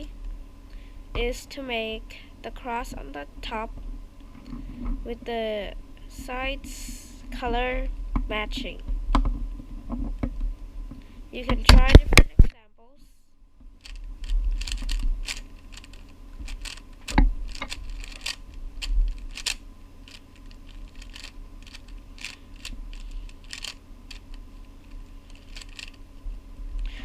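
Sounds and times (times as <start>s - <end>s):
puzzle cube layers clicking: 14.6s - 18.4s, 19.2s - 24.3s, 25.3s - 26.0s.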